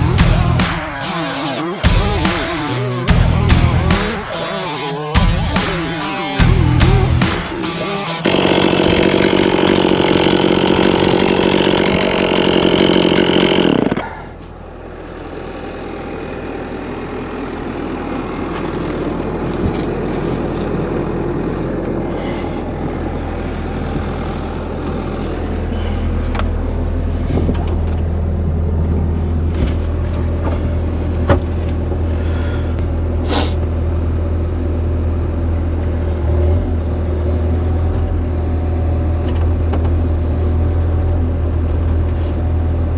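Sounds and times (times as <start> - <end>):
chainsaw running at high revs: 0.0 - 14.3
diesel engine running: 0.0 - 42.9.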